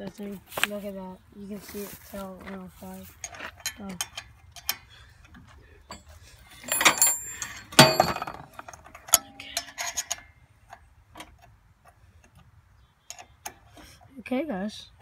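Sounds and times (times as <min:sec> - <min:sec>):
metal tools clanking: 0:02.8 - 0:12.0.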